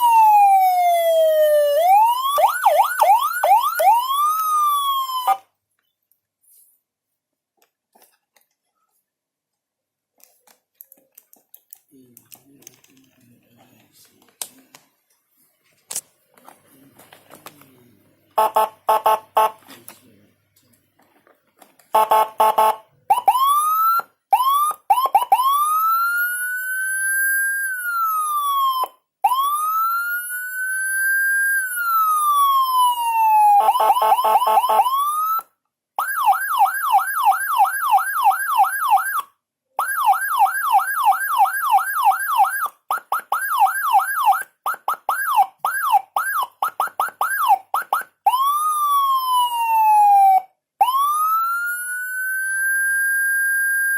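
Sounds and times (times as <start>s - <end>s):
electronic siren: 0.0s - 5.5s, 18.4s - 19.6s, 22.0s - 53.9s.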